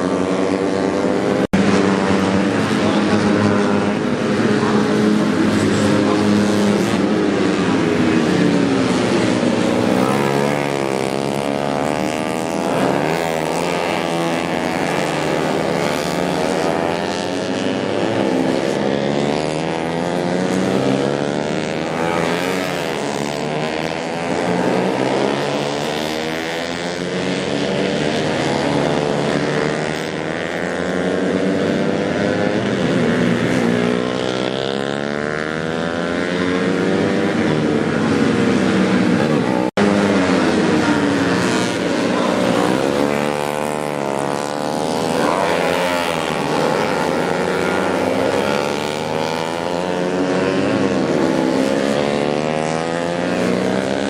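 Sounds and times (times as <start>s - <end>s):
racing motorcycles accelerating: 0.0s - 54.0s.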